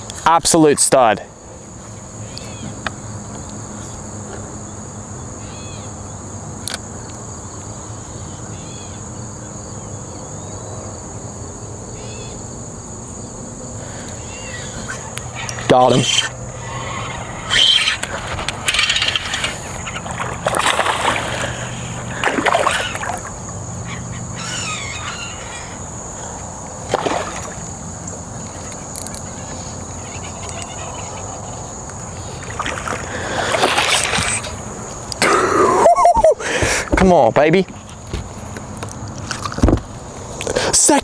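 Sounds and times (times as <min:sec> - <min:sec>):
fish splashing at water surface: 0:14.2 - 0:31.4, 0:32.1 - 0:35.3.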